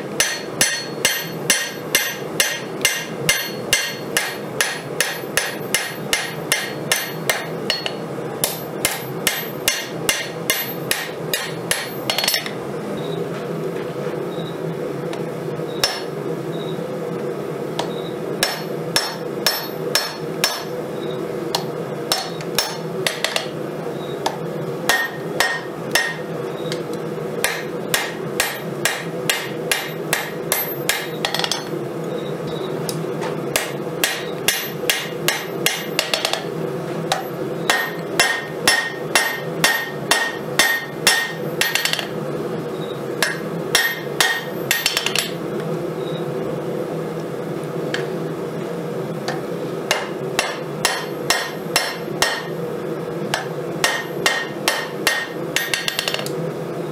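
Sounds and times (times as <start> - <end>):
steady hum: 0.0 - 56.9
hammer striking steel on anvil: 0.2 - 12.5, 15.8 - 16.1, 17.8 - 20.7, 21.6 - 23.5, 24.2 - 26.3, 27.4 - 31.7, 33.5 - 36.5, 37.1 - 42.1, 43.2 - 45.4, 49.3 - 52.6, 53.3 - 56.3.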